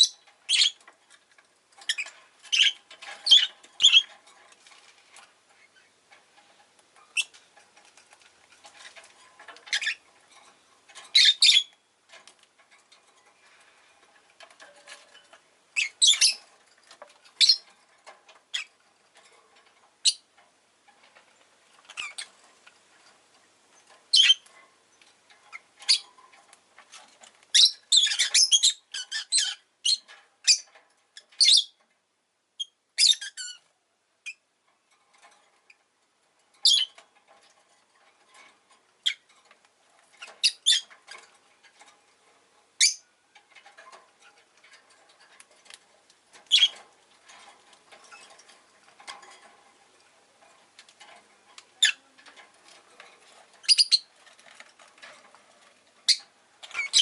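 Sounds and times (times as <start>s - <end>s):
lovebird chirps and squawks: 0.0s - 0.8s, 1.9s - 4.1s, 9.7s - 10.0s, 11.1s - 11.7s, 15.8s - 16.4s, 17.4s - 17.6s, 24.1s - 24.4s, 27.5s - 30.7s, 31.4s - 31.7s, 32.6s - 33.6s, 36.6s - 37.0s, 40.2s - 40.9s, 42.8s - 43.0s, 46.5s - 46.7s, 51.8s - 52.0s, 53.6s - 54.0s, 56.1s - 57.0s.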